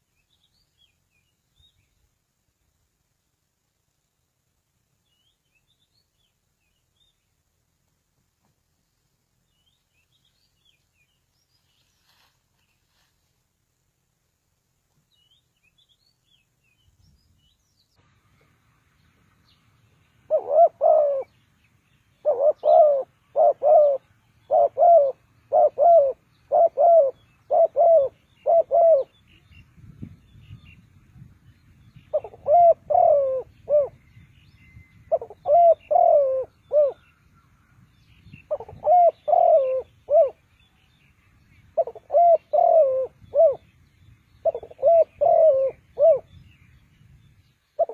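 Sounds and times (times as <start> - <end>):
small birds chirping: 4.9 - 13.4, 14.8 - 47.9
dove cooing: 20.3 - 21.4, 22.2 - 29.2, 32.1 - 34.1, 35.1 - 37.0, 38.4 - 40.4, 41.8 - 43.7, 44.4 - 46.4.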